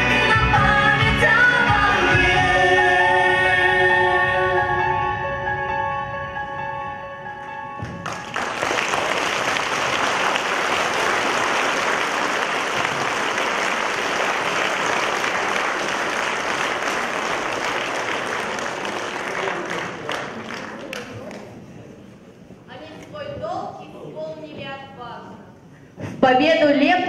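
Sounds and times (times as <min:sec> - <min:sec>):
music: 0:00.0 - 0:09.1
audience applauding: 0:07.8 - 0:21.6.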